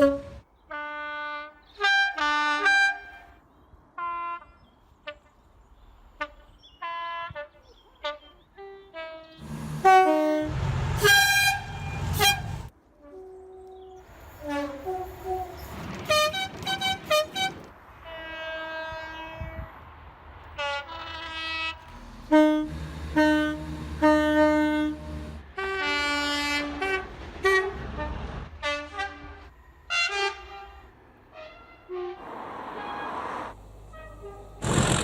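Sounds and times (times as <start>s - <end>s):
train horn blasts: 0.0s - 3.4s, 6.2s - 19.7s, 20.6s - 33.2s.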